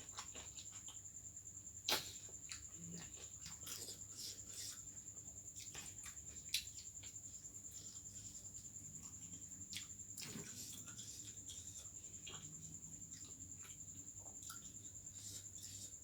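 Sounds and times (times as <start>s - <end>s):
person chewing and lip smacking: 9.0s - 15.9s.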